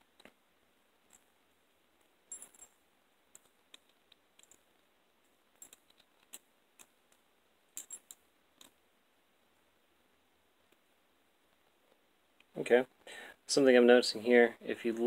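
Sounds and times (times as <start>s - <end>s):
metal handcuffs clicking and clinking: 2.3s - 4.6s, 5.5s - 6.9s, 7.7s - 8.8s.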